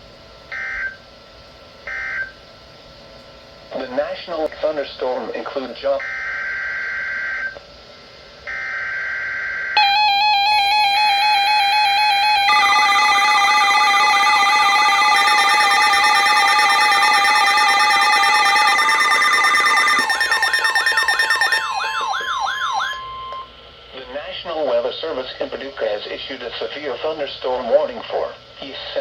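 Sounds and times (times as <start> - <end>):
warbling digital data bursts: 9.8 - 23.2
electronic alert tone: 9.8 - 23.5
swooping siren-like tones: 9.8 - 23.5.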